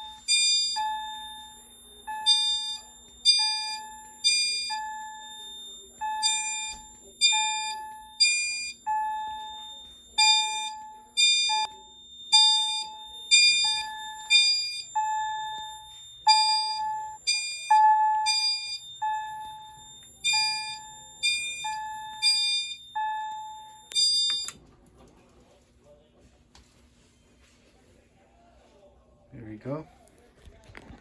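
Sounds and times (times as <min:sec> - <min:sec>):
fire alarm chimes: 0:00.0 - 0:24.6.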